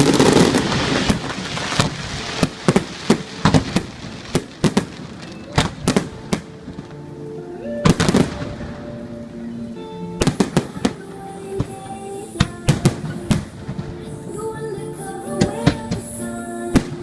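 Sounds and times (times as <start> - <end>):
fireworks bangs: 0.0 - 7.0, 11.6 - 14.1
music: 0.0 - 17.0.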